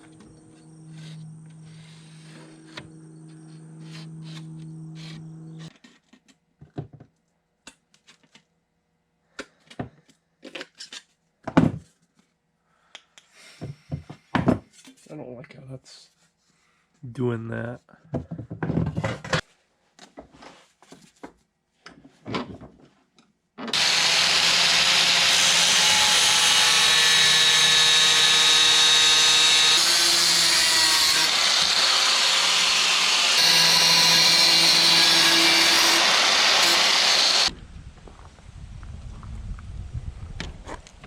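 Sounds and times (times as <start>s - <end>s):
power tool running: 23.7s - 37.5s.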